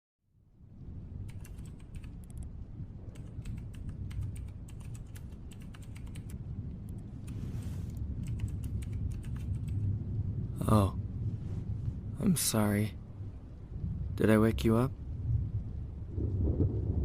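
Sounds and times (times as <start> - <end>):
steady low rumble: 0.3 - 17.0
computer keyboard keys clicking: 1.2 - 2.5, 3.2 - 6.4, 8.2 - 9.8.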